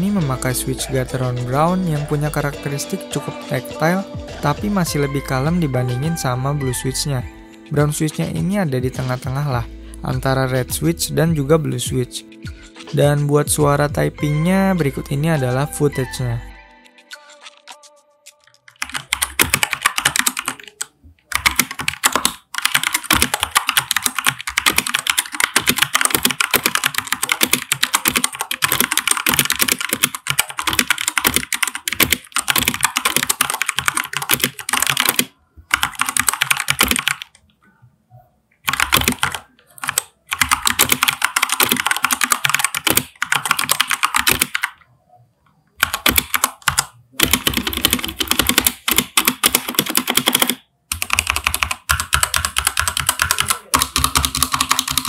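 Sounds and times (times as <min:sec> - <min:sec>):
mechanical keyboard typing: 0:17.0 - 0:37.4, 0:38.6 - 0:44.8, 0:45.8 - 0:55.0.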